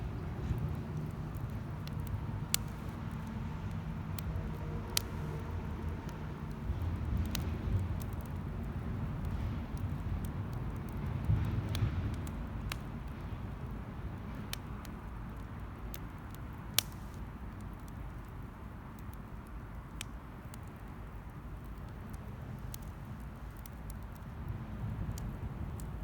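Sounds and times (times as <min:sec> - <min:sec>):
campfire crackles and pops: 0:00.0 - 0:26.0
fire low rumble: 0:00.0 - 0:26.0.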